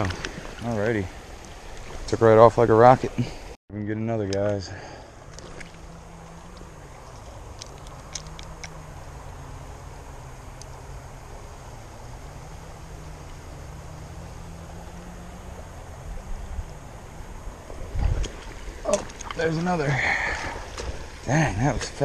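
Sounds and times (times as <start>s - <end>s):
creek water rushing: 0.0s - 3.6s, 4.5s - 22.0s
low hum: 0.0s - 22.0s
faint clicks: 6.5s - 8.8s.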